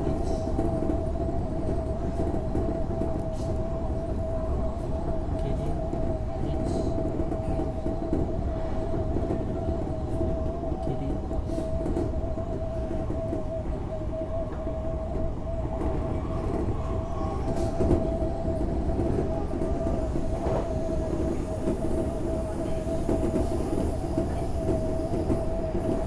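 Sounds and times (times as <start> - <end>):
train rolling rumble: 0.0 - 26.0.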